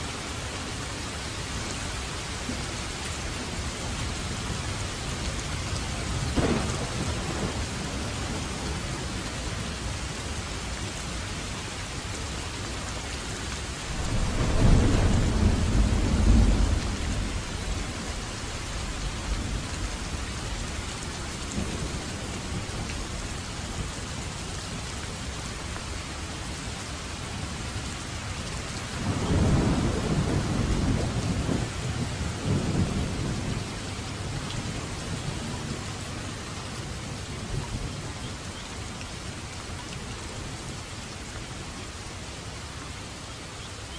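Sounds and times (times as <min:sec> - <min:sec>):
steady rain falling: 0:00.0 - 0:43.9
thunder rumbling: 0:04.3 - 0:09.8, 0:13.8 - 0:20.7, 0:28.8 - 0:38.0.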